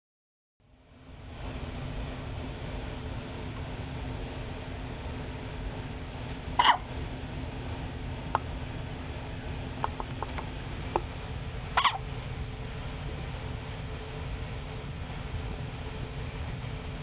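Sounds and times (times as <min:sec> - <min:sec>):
baby hiccupping: 0:06.6 - 0:06.8, 0:09.8 - 0:10.4.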